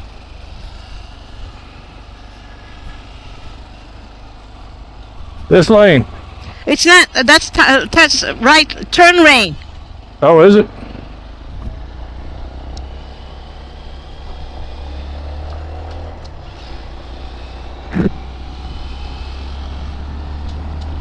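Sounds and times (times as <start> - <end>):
motorcycle engine running: 0.0 - 21.0
low wind rumble on microphone: 11.4 - 12.9.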